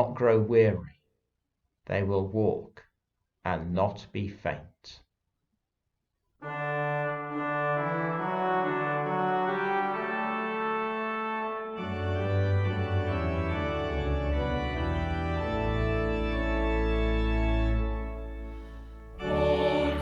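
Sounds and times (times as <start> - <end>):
deep organ bass pedal notes: 6.4 - 20.0
organ playing sustained chords: 6.4 - 20.0.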